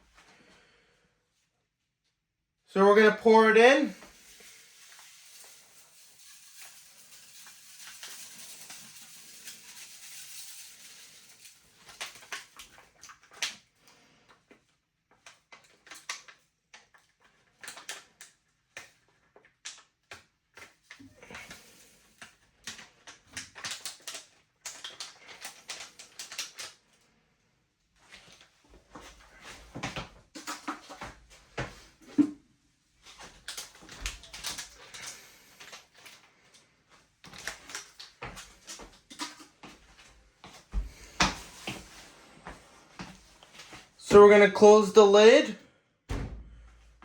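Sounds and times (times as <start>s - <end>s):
powder pouring into washer drum: 3.6s - 12.8s, 21.1s - 24.2s
packet rustling: 3.6s - 13.4s, 33.0s - 36.3s, 37.2s - 40.0s.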